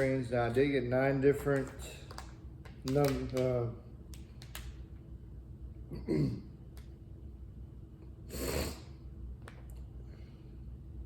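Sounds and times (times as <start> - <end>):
sharp noisy breath: 8.3 - 9.0.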